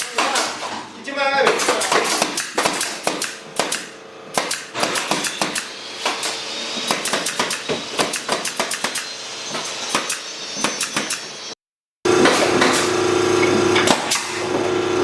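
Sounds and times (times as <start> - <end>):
sharp knocks and clicks on wood: 1.5 - 6.3, 6.9 - 9.0.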